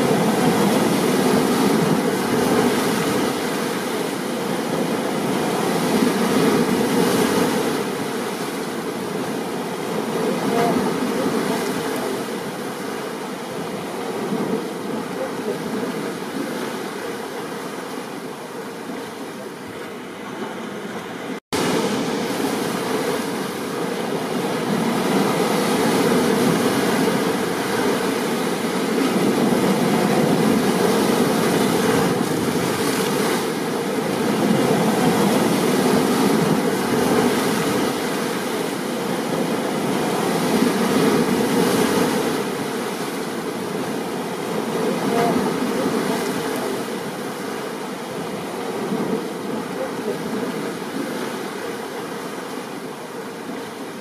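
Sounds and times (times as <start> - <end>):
ocean surf: 0.0 - 54.0
steady rain: 21.6 - 54.0.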